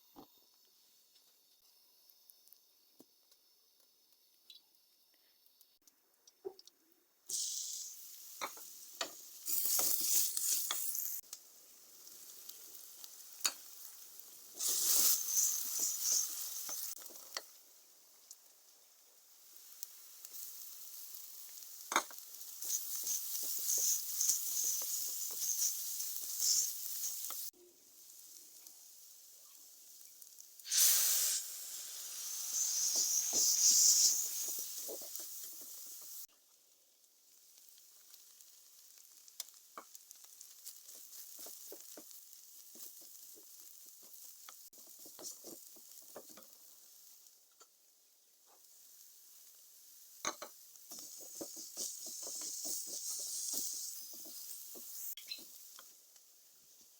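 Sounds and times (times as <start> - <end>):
food sizzling in a pan: 0.0 - 5.8, 6.4 - 56.9
spoon scraping and tapping pan: 21.9 - 27.4, 40.9 - 46.6, 50.2 - 55.9.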